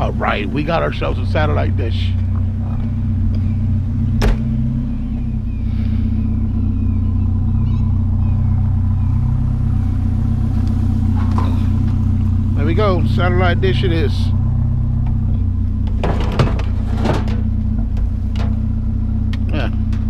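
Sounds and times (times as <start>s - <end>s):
truck engine running: 0.0s - 20.0s.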